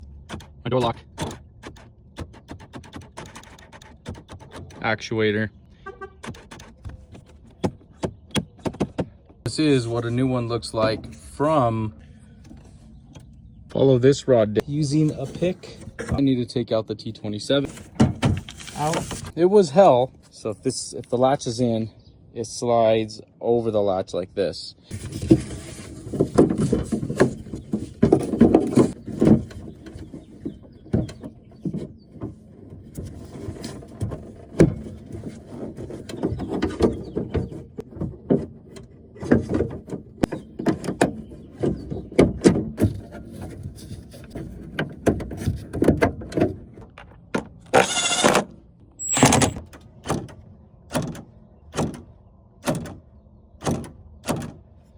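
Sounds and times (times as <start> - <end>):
tools clicking and knocking on door: 0.0 - 5.0, 6.2 - 9.5, 49.1 - 53.0, 53.6 - 54.6.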